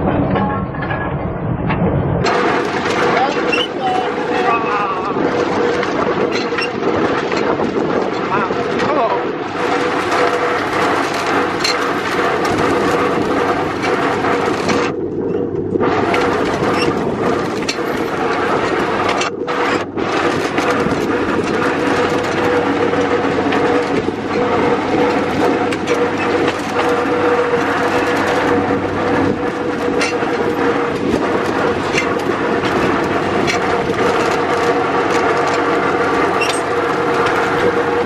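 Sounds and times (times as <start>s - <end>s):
steady drone: 0.0s - 38.0s
train car clattering and rattling: 0.0s - 38.0s.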